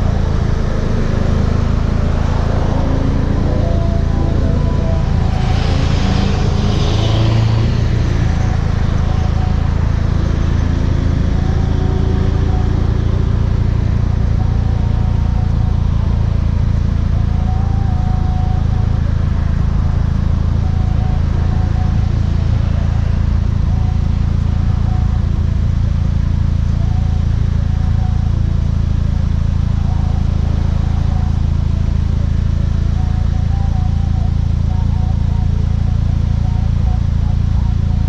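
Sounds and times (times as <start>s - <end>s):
car exhaust note: 0.0s - 38.0s
high-pitched rush of noise: 0.0s - 38.0s.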